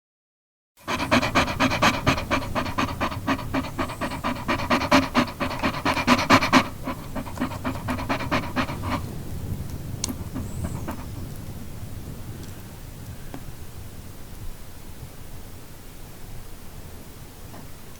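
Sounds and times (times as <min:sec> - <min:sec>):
dog panting rapidly: 0:00.8 - 0:09.3, 0:10.0 - 0:11.4.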